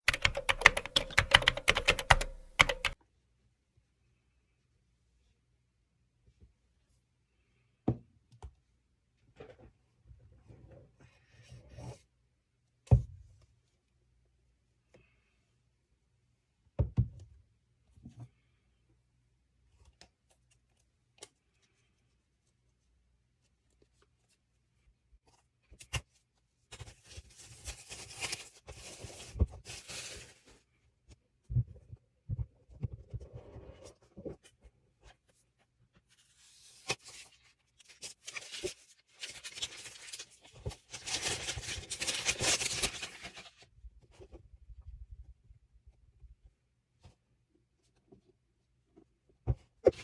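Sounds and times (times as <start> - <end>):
packaging rubbing and rustling: 36.9 - 43.6.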